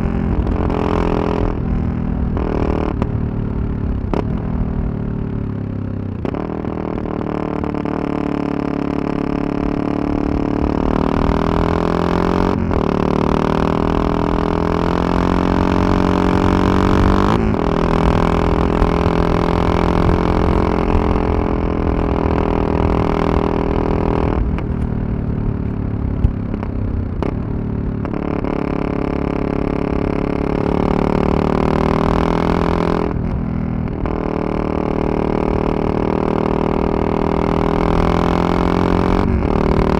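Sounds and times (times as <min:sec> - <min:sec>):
motorcycle engine revving through gears: 0:00.0 - 0:39.9
wind rumble on microphone: 0:09.4 - 0:39.9.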